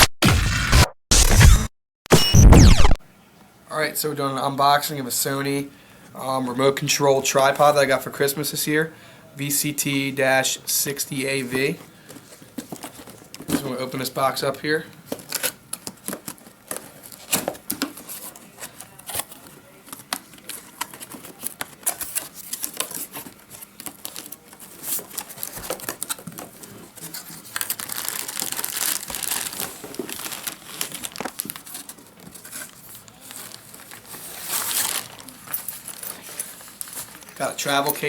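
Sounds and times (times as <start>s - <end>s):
packaging rustling and tearing: 15.1s - 38.0s.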